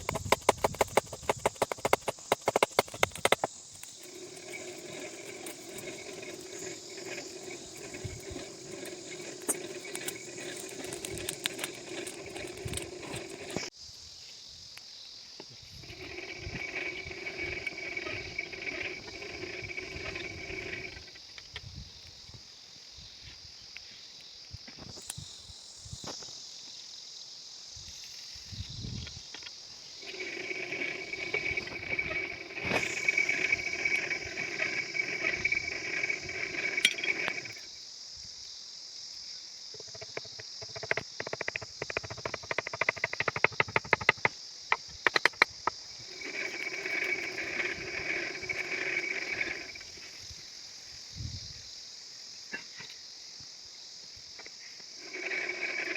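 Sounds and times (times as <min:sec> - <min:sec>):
mechanical whine: 0:00.0 - 0:13.7, 0:15.5 - 0:22.1, 0:28.0 - 0:37.8, 0:44.8 - 0:51.6, 0:55.0 - 0:55.9
insects chirring: 0:00.0 - 0:55.9.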